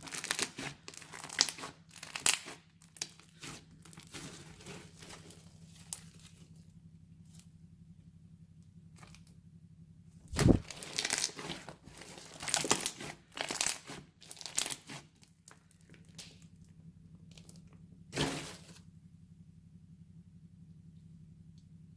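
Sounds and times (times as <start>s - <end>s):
crunchy slime squeezed by hand: 0.0s - 6.3s, 10.3s - 16.5s.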